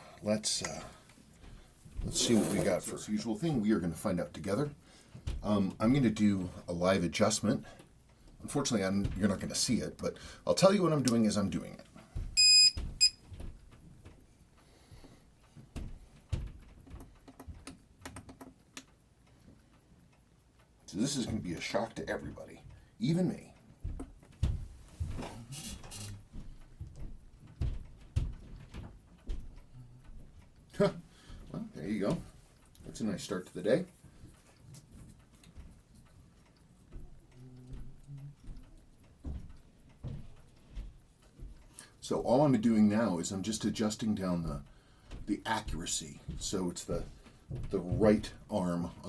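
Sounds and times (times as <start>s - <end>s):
soft knocks and clicks of small tools: 12.2s - 20.7s, 23.8s - 30.7s, 34.0s - 41.8s, 44.5s - 45.3s, 46.3s - 48.2s.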